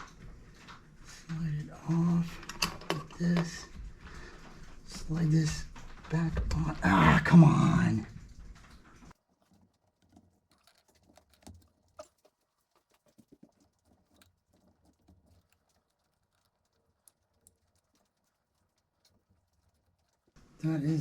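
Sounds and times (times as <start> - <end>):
faint clicks of tools handled: 0.0 - 4.9.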